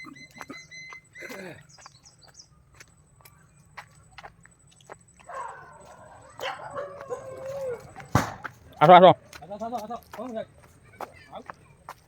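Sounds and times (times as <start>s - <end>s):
high chirps: 0.0s - 8.8s
wavering animal call: 5.3s - 8.2s
animal call falling in pitch: 5.4s - 8.4s.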